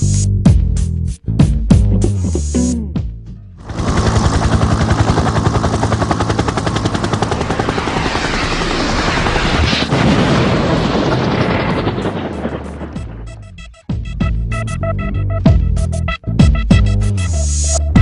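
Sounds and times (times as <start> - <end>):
helicopter rotor chop: 3.6 - 13.6
helicopter engine noise: 3.6 - 13.8.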